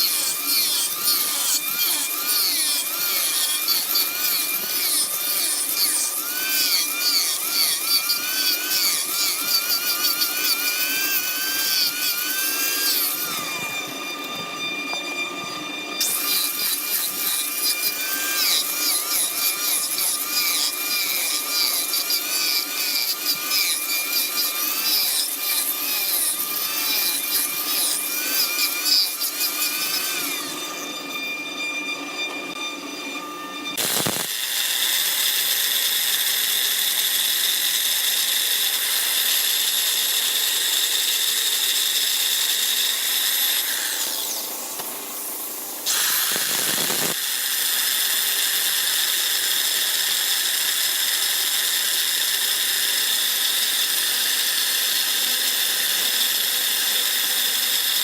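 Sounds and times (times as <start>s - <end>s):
lathe motor whine: 7.3s - 20.0s, 29.8s - 58.0s
machine whine: 30.2s - 39.1s, 43.7s - 47.2s.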